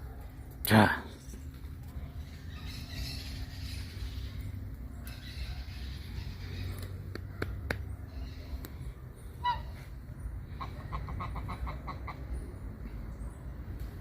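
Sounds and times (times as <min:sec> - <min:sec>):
low steady rumble: 0:00.0 - 0:14.0
animal calls: 0:09.3 - 0:12.4.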